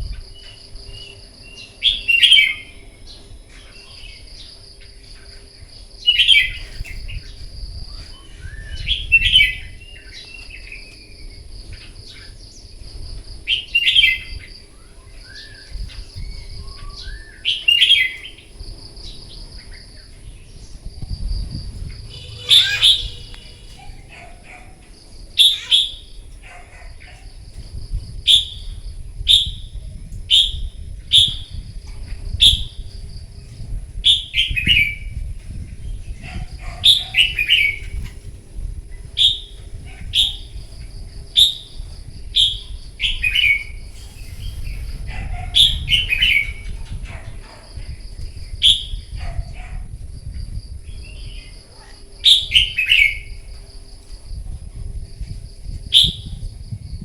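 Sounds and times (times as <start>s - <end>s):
bird whistled song: 0.0s - 4.6s, 6.0s - 12.7s, 13.4s - 20.8s, 21.8s - 24.7s, 25.4s - 26.2s, 28.0s - 33.0s, 34.0s - 38.1s, 39.0s - 47.3s, 48.6s - 49.2s, 52.2s - 53.4s, 55.9s - 56.5s
insect trilling: 21.8s - 24.7s, 25.4s - 26.9s, 42.4s - 47.6s.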